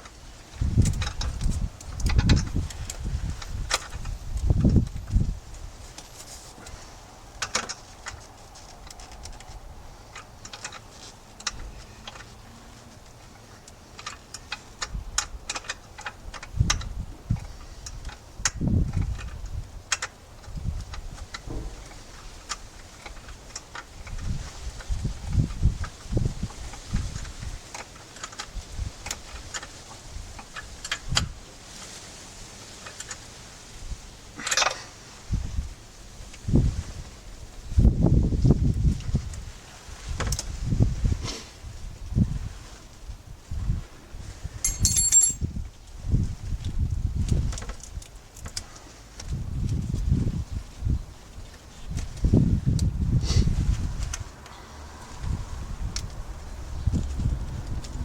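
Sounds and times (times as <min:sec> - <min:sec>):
short rustle: 0:05.8 - 0:07.0
hand tools clicking and tapping: 0:44.6 - 0:45.4.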